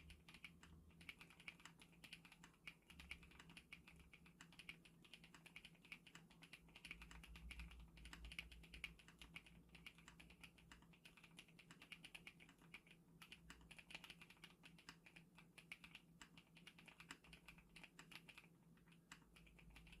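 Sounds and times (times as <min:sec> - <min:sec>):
fast mechanical keyboard typing: 0:00.0 - 0:20.0.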